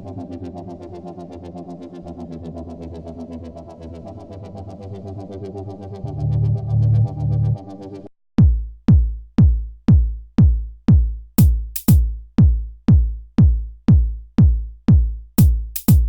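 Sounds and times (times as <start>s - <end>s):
drum machine kick drum: 8.4s - 16.0s
electronic music: 15.4s - 16.0s.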